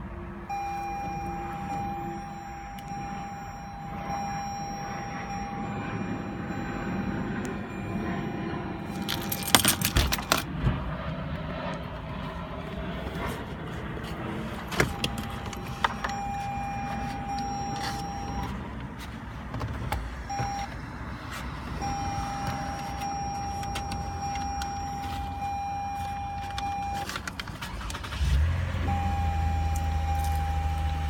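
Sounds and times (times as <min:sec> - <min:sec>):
high electronic tone: 0:00.5 - 0:10.5.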